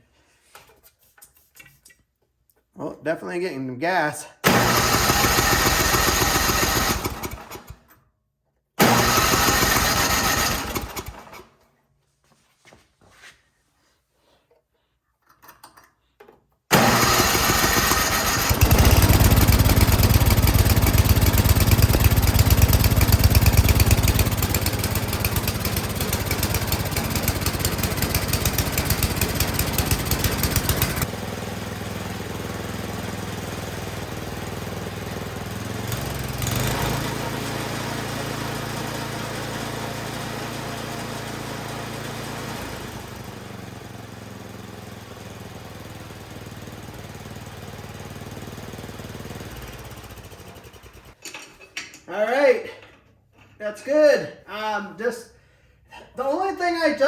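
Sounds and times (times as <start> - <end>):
snowblower engine running: 4.4 - 7.8, 8.8 - 11.4, 16.7 - 51.2.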